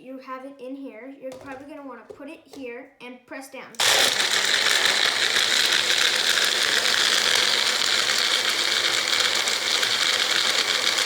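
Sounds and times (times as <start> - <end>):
blender running: 3.8 - 11.0.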